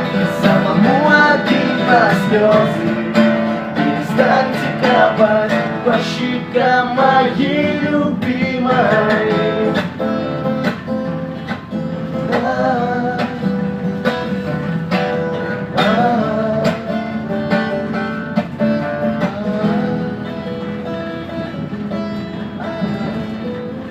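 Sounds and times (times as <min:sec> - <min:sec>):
acoustic guitar strumming: 0:00.0 - 0:23.9.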